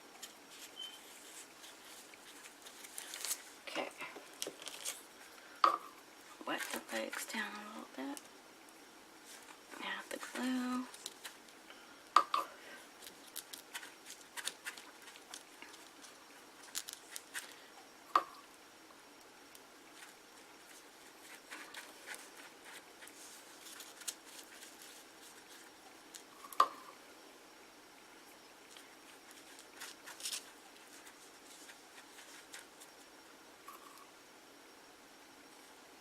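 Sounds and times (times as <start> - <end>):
faint clicks and rustles: 0.0 - 5.4, 12.7 - 17.8, 19.2 - 26.8, 28.7 - 34.1.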